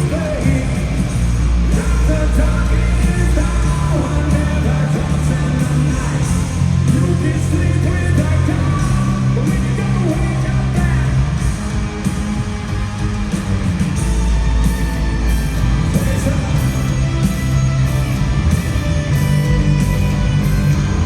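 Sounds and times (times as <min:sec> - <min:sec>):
live hard rock band: 0:00.0 - 0:21.0.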